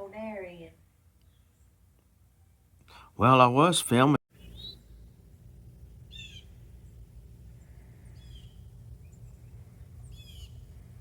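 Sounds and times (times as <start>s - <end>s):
steady low rumble: 4.4s - 11.0s.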